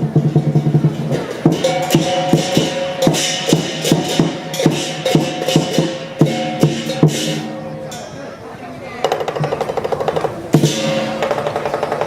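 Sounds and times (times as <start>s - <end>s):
clashing cymbals: 0.0s - 8.2s, 10.5s - 12.0s
drum strikes: 0.0s - 8.2s, 9.0s - 12.0s.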